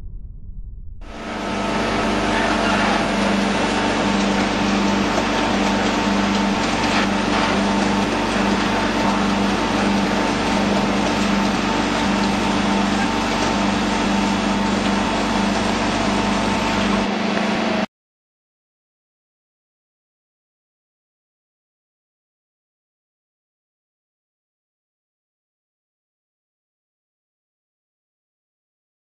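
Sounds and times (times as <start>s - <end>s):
concrete pump machine droning: 1.1s - 17.9s.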